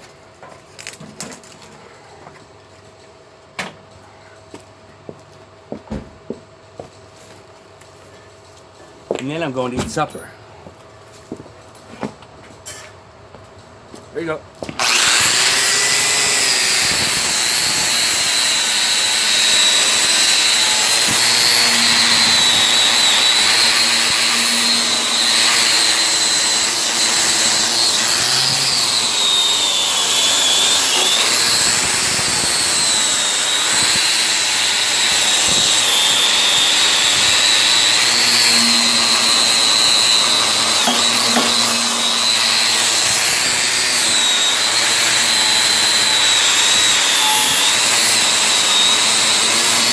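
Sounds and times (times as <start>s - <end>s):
metalworking tool on steel: 14.8s - 49.9s.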